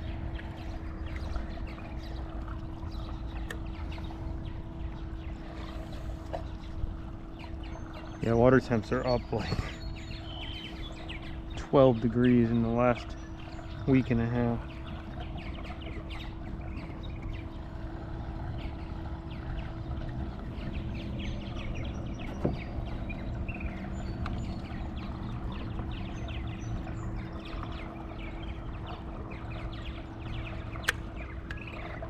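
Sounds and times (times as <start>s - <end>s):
faint steady hum: 0.0s - 32.0s
low rumble of water and wind: 0.0s - 32.0s
small splashy ticks: 0.4s - 4.1s, 24.2s - 27.9s, 29.6s - 32.0s.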